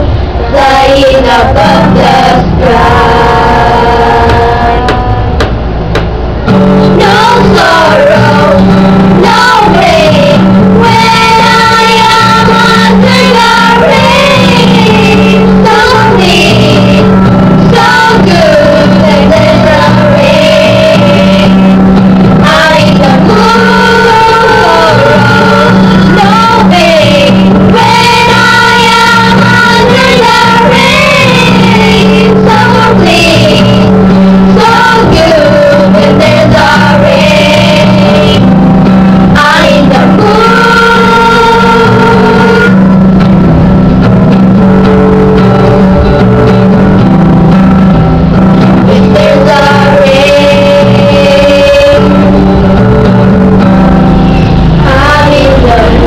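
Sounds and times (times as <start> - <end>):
person singing: 0.0 - 5.4, 6.8 - 38.6, 39.2 - 42.9, 48.6 - 52.9, 54.4 - 56.0
low backing note: 2.4 - 7.5.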